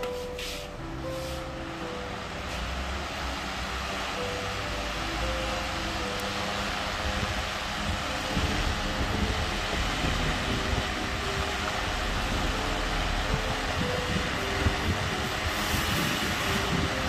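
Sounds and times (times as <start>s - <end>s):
electric fan rushing air: 0.0s - 17.0s
wind buffeting microphone: 6.7s - 17.0s.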